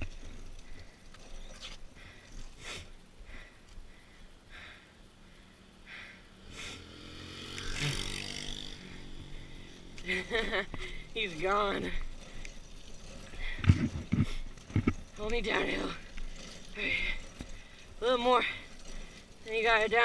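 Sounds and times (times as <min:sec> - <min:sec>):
vehicle engine passing by: 0:06.4 - 0:11.5.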